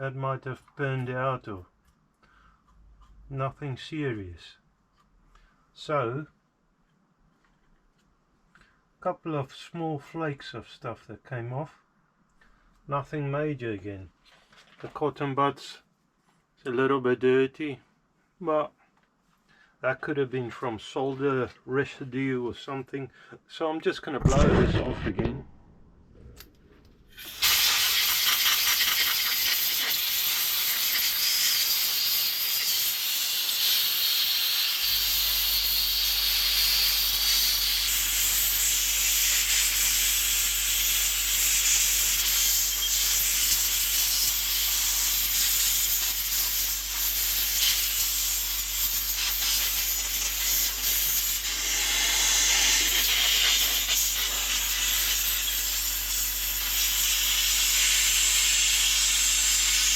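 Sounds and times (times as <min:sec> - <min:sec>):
low steady hum: 0:24.2 - 0:27.4
air blowing hiss: 0:27.0 - 0:38.7, 0:41.3 - 0:59.9.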